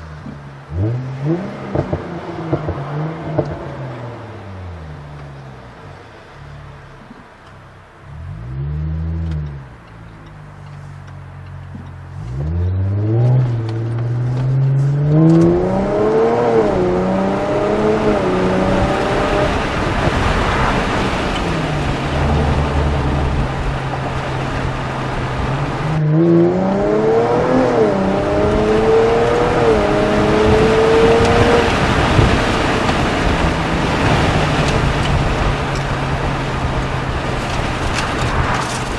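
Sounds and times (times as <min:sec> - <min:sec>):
car engine accelerating hard: 0:00.0 - 0:38.9.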